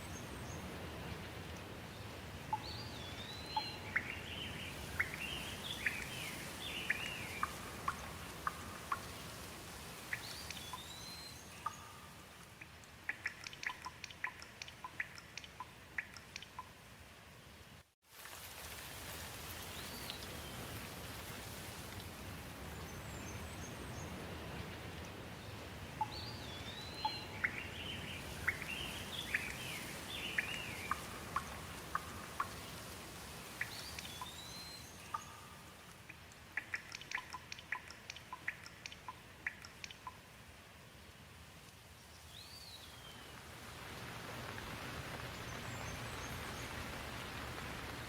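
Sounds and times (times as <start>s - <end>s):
water drips: 0.0s - 17.1s, 18.1s - 48.0s
steady rain falling: 0.0s - 48.0s
birds chirping: 1.9s - 9.5s, 25.5s - 32.8s.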